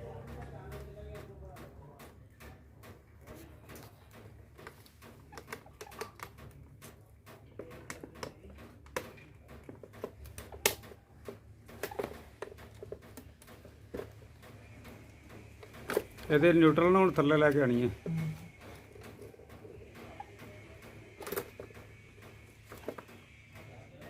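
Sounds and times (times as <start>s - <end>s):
clicks and taps of hand tools: 0.2s - 16.3s
steady low hum: 10.3s - 24.0s.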